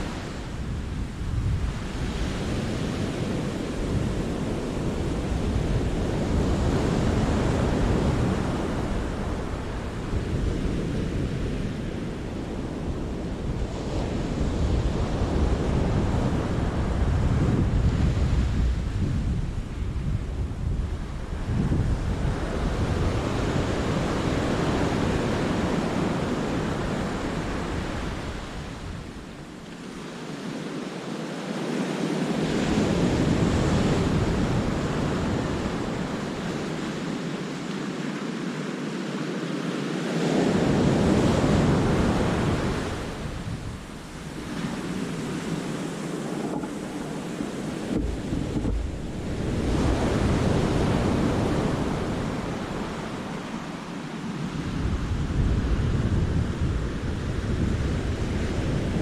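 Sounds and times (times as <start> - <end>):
wind buffeting microphone: 0.0 - 37.5, 40.1 - 59.0
sea waves washing onto rocks: 40.5 - 53.9.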